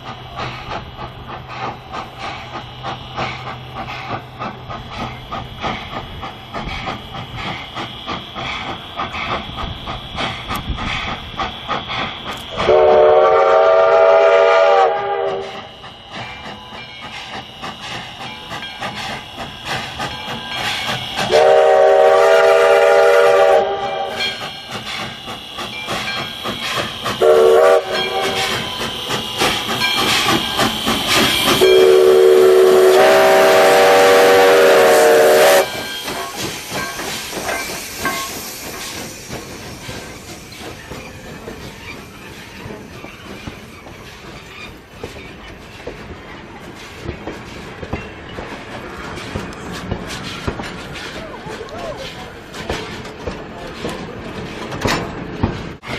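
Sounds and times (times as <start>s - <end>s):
steam hiss: 0.0s - 55.9s
train running noise: 0.0s - 55.9s
locomotive whistle chord: 12.2s - 16.5s, 17.6s - 36.4s.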